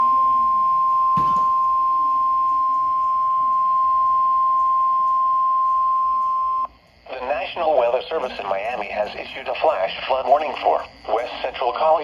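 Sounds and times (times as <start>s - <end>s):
high-pitched alarm tone: 0.0s - 12.0s.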